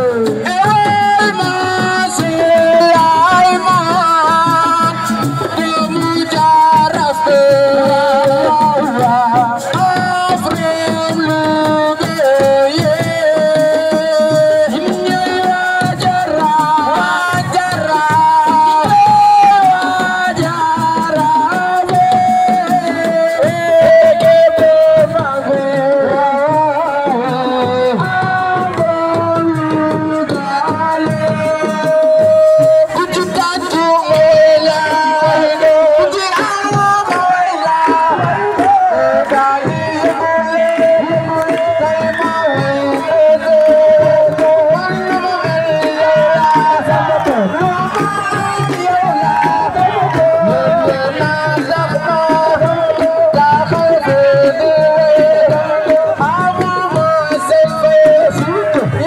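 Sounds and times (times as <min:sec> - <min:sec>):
hand drums playing: 0:00.0 - 0:59.0
person singing: 0:00.0 - 0:59.0.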